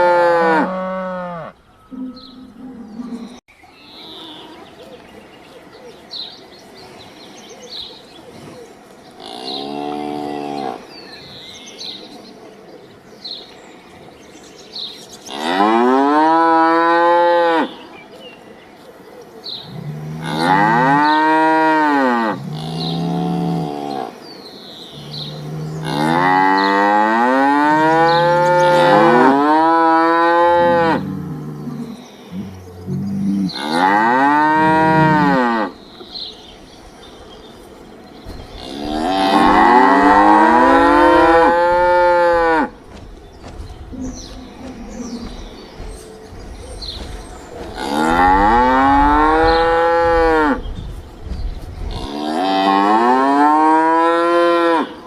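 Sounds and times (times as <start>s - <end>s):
cattle mooing: 0.0s - 3.4s, 25.0s - 32.0s, 32.8s - 35.7s, 38.6s - 42.8s, 47.0s - 50.6s.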